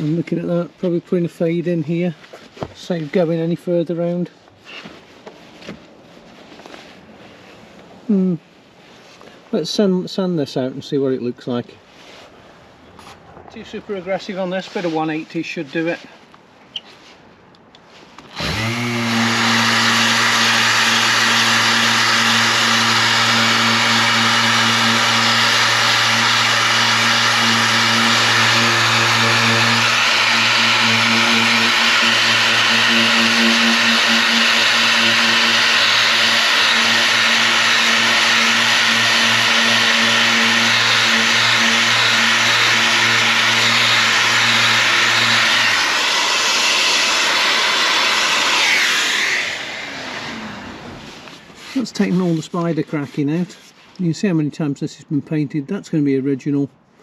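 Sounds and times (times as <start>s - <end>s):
power sander sanding plastic: 18.2s - 53.2s.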